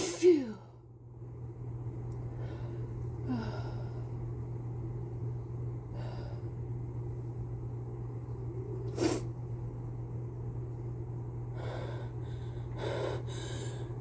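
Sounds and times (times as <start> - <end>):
breathy inhalations: 11.5 - 14.0.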